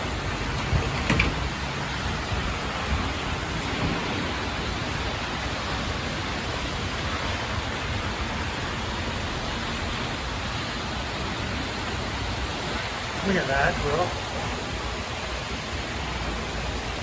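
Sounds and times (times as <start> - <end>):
wind buffeting microphone: 0.0 - 8.8
strong wind: 0.0 - 13.4
heavy rain: 0.0 - 17.0.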